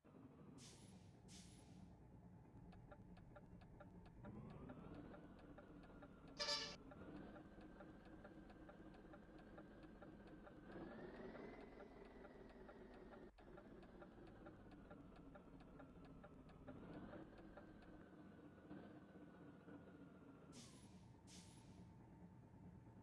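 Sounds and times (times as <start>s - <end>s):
truck engine whining: 2.6s - 21.0s
horn toot: 6.4s - 6.8s
faint regular ticking: 7.1s - 18.3s.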